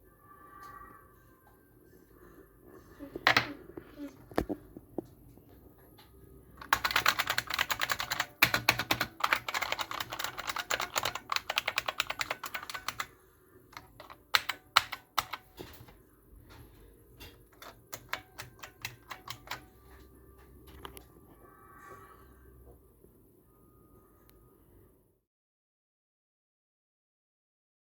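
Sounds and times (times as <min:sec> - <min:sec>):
keyboard keys clicking: 0:06.6 - 0:13.1, 0:13.7 - 0:16.0, 0:17.2 - 0:21.0.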